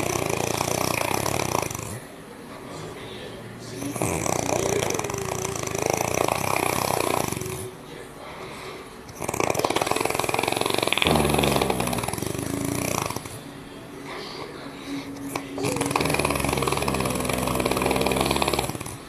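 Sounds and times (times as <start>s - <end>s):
person snoring: 0.0s - 2.1s, 3.8s - 7.7s, 9.1s - 13.4s, 14.9s - 19.0s.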